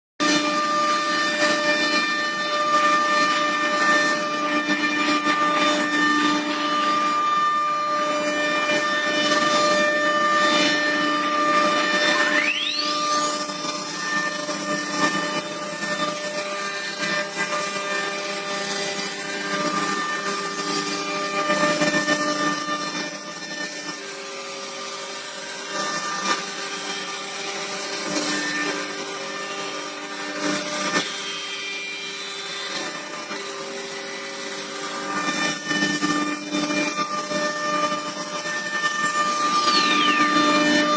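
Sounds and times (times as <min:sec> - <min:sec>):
router spindle whining: 0:00.2 - 0:40.9.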